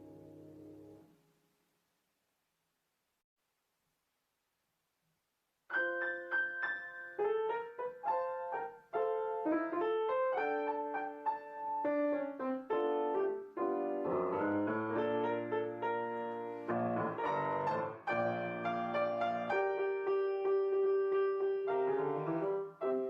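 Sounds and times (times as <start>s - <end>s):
piano music: 5.7s - 23.0s.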